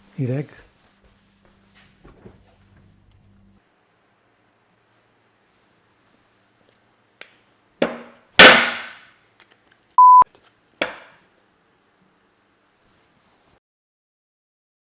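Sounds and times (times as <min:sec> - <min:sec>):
short pure beep: 0:10.0 - 0:10.2.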